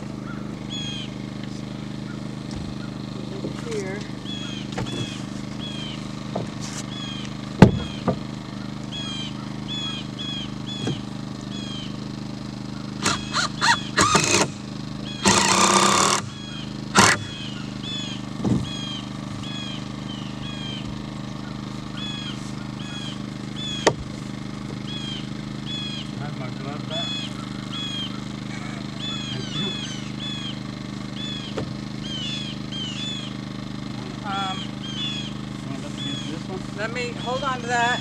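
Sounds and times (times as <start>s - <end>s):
steady low hum: 0.0s - 38.0s
bird chirping: 0.2s - 3.3s, 4.2s - 6.1s, 6.8s - 12.0s, 15.0s - 23.9s, 24.8s - 26.3s, 26.9s - 30.6s, 31.2s - 33.4s, 34.4s - 38.0s
harsh burst: 13.0s - 17.4s.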